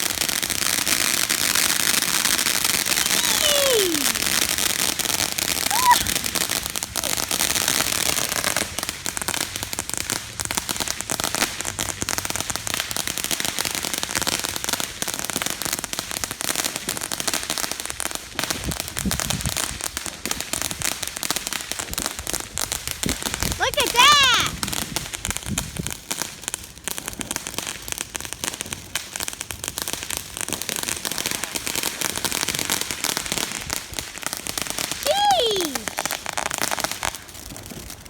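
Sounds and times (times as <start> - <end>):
fireworks crackling and popping: 0.0 - 38.0.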